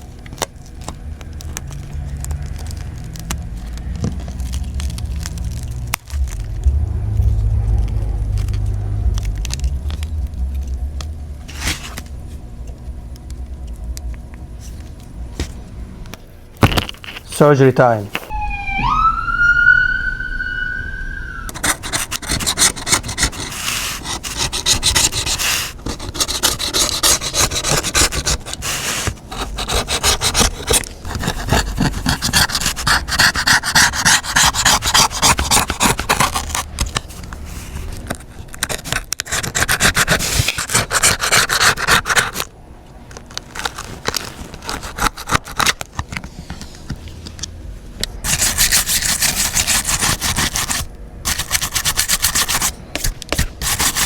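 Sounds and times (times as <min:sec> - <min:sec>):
rising siren-like tone: 0:05.4 - 0:11.4, 0:18.3 - 0:21.7
tool scraping and rubbing: 0:21.4 - 0:42.5, 0:44.3 - 0:46.7, 0:48.2 - 0:54.0.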